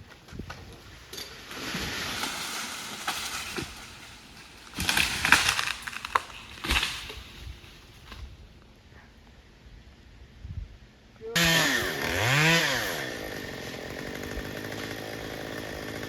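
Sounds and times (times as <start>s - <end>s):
wood and branches cracking: 0.0s - 8.4s.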